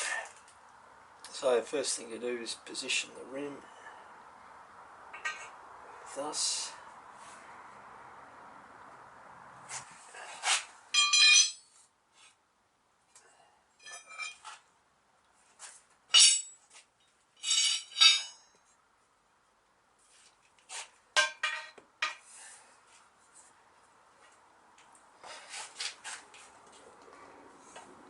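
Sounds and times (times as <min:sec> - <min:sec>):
metallic clinks and clanks: 0:10.9 - 0:11.7, 0:13.8 - 0:14.5, 0:16.1 - 0:18.6.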